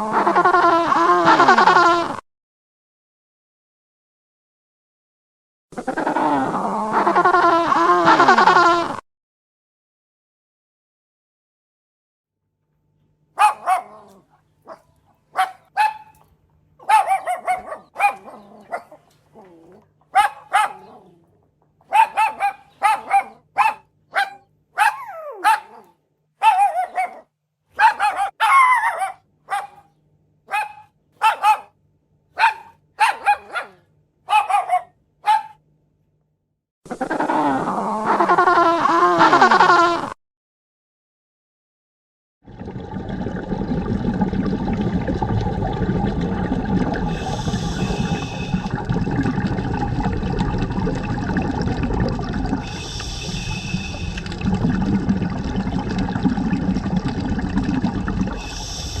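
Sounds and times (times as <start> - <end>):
dog barking: 13.4 - 16.2, 16.8 - 19.0, 20.1 - 21.2, 21.8 - 35.6.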